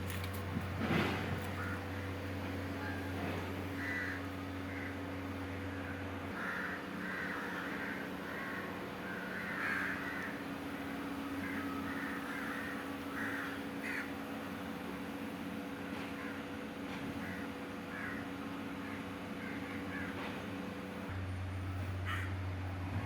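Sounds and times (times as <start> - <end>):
engine humming: 0.0 - 23.0
harsh bird calls: 5.8 - 14.1.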